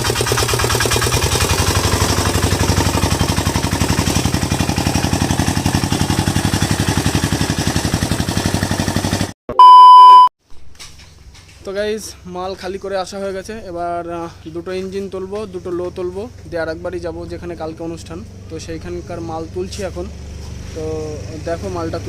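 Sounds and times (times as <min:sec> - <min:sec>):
vehicle engine throbbing: 0:00.0 - 0:09.3
electronic beep: 0:09.5 - 0:10.3.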